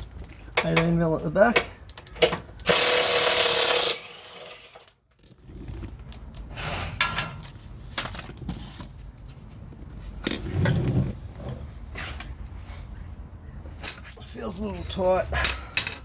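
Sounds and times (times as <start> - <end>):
power tool running: 2.7 - 4.8.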